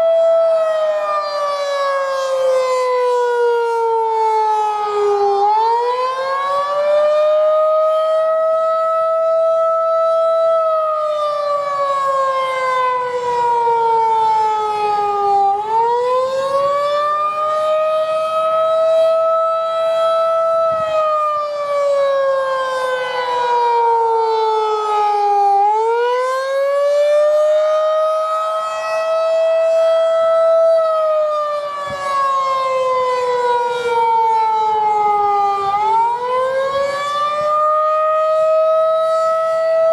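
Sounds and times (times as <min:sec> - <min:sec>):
outdoor warning siren wailing: 0:00.0 - 0:39.9.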